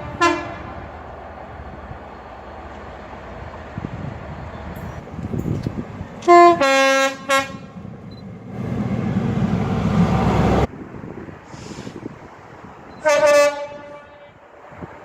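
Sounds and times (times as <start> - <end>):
train horn blasts: 0.0 - 0.8, 6.2 - 7.8, 13.0 - 14.4
train rumbling: 0.0 - 15.0.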